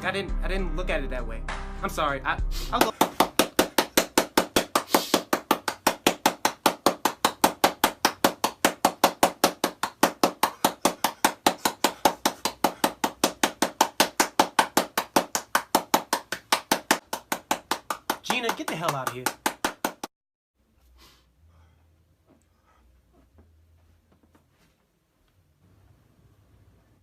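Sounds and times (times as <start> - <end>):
rapid even knocking: 2.8 - 20.1.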